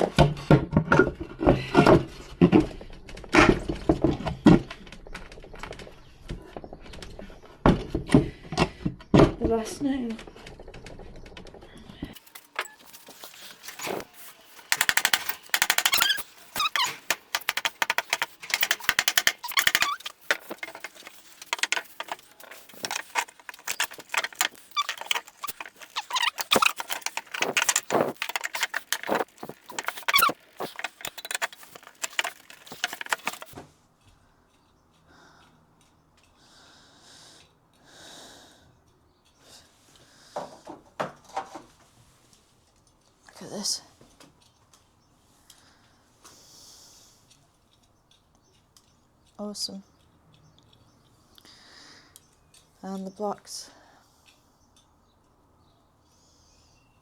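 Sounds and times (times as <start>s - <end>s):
faint handling sounds: 12.1s - 34.2s
nail scraping out of wood: 12.2s - 33.6s.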